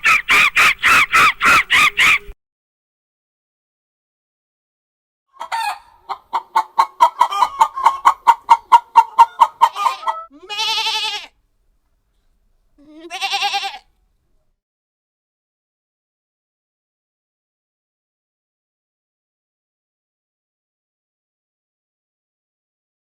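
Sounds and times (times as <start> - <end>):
chicken clucking: 5.4 - 10.3
animal bleating: 9.7 - 11.4, 12.8 - 13.9.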